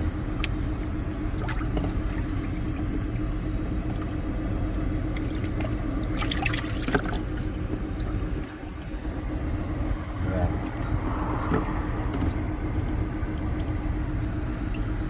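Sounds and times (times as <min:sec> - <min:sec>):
low rumble and hum: 0:00.0 - 0:15.0
water pouring and trickling: 0:00.1 - 0:04.1, 0:05.1 - 0:09.3.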